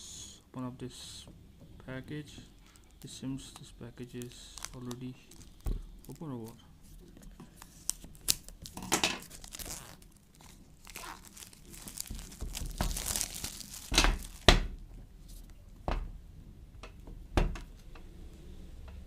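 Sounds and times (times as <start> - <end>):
packaging crinkling and rustling: 2.6 - 14.8.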